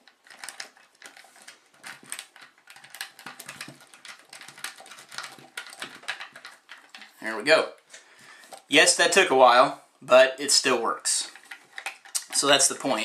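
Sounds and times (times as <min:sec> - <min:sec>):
lock pick clicking and scratching: 0:00.0 - 0:07.2, 0:11.3 - 0:12.6.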